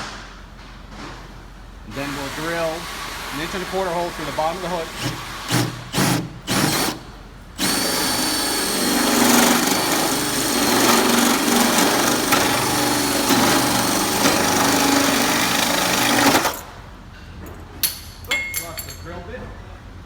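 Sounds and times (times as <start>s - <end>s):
electric drill cutting through metal: 3.5s - 7.0s, 7.6s - 16.6s.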